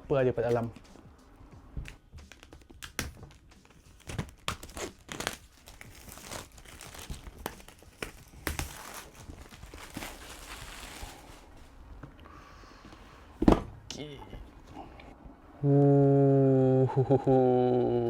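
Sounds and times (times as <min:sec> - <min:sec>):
packaging tearing and crinkling: 0:02.3 - 0:11.6.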